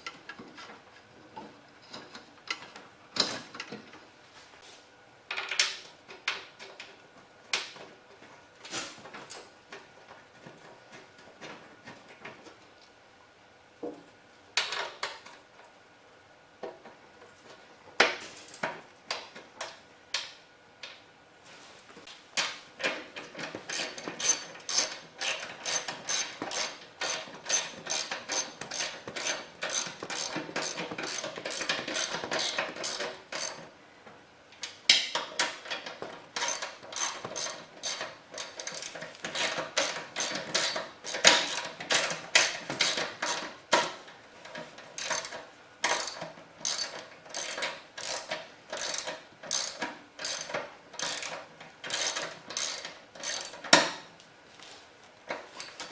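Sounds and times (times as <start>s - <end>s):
ratchet wrench clicking: 23.7s - 33.6s, 36.4s - 43.4s, 45.0s - 53.6s.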